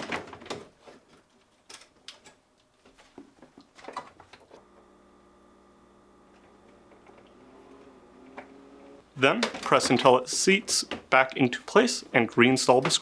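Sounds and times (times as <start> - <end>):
faint steady hum: 4.5 - 9.2.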